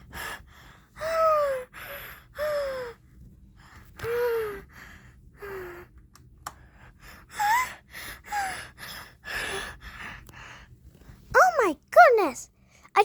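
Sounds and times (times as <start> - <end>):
person gasping and whimpering: 7.0 - 10.1.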